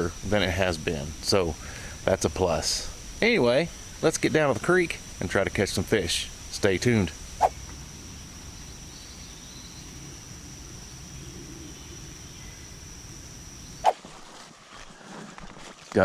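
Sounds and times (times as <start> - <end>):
low outdoor rumble: 0.0 - 13.8
insects droning: 0.0 - 14.0.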